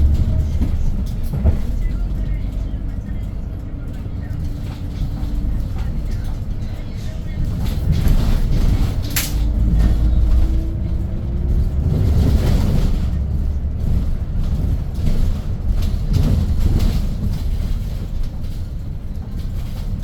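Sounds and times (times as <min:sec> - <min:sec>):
bus engine rumbling: 0:00.0 - 0:20.0
road noise: 0:00.0 - 0:20.0.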